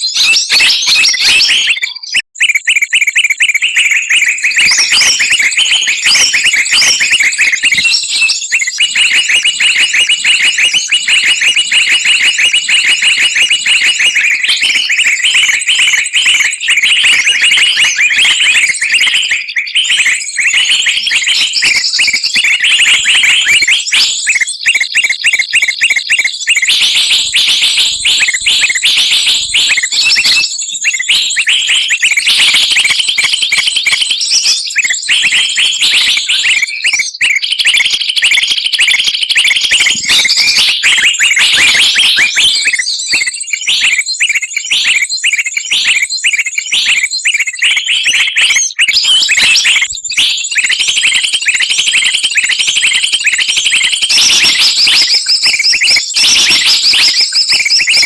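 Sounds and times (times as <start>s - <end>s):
songbirds chirping and trilling: 0.0s - 58.0s.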